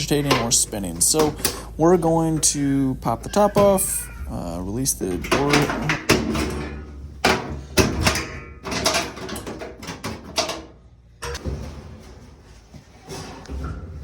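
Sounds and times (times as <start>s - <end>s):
metal panel clattering: 0.0s - 3.9s, 4.8s - 14.0s.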